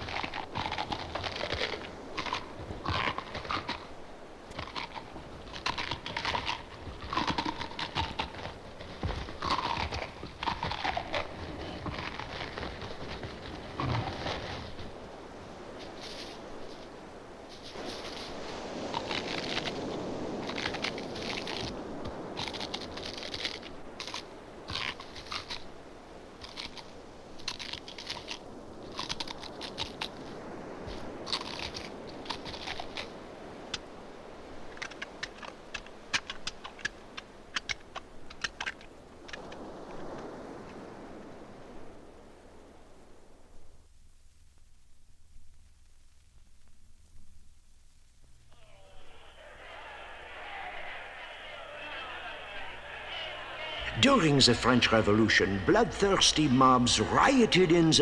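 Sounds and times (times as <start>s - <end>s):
dry clicks and crackles: 0.0s - 14.9s, 17.5s - 25.7s, 26.4s - 33.9s, 34.6s - 40.3s
crunching noise: 0.0s - 40.9s, 48.4s - 58.0s
faint low rumble: 41.1s - 58.0s.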